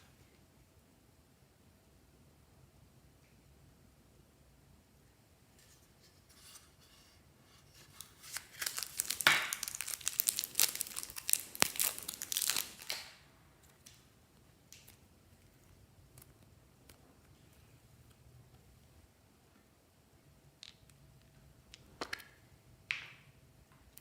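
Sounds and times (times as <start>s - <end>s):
thin packaging crinkling and tearing: 7.7s - 13.9s.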